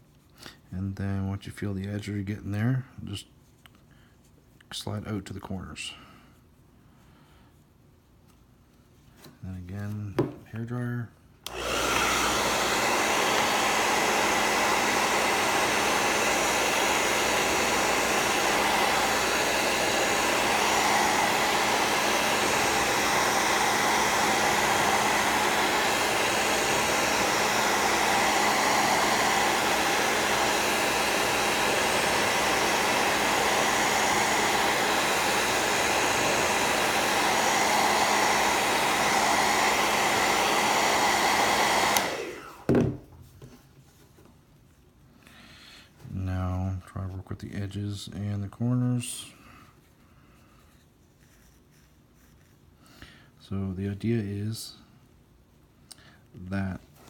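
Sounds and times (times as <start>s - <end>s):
hair dryer running: 11.4s - 43.1s.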